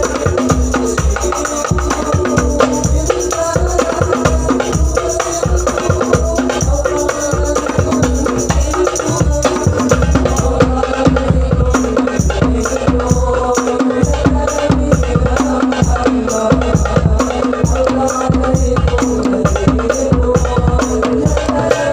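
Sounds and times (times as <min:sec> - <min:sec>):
tambourine-like jingling percussion: 0:00.0 - 0:11.1
hand drums: 0:00.0 - 0:21.9.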